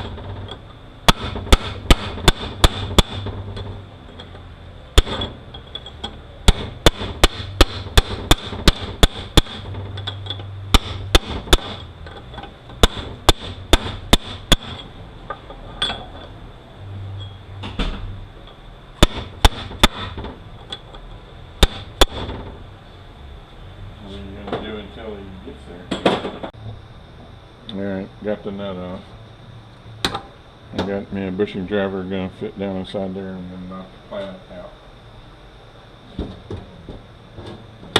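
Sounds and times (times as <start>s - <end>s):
hammer striking chisel on metal: 5.0s - 14.9s, 19.0s - 20.2s.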